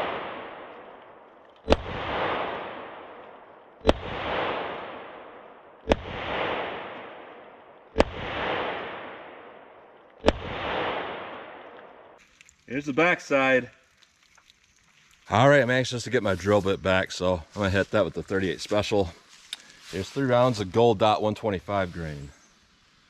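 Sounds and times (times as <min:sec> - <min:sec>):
revolver shots echoing: 0:03.8 - 0:12.1.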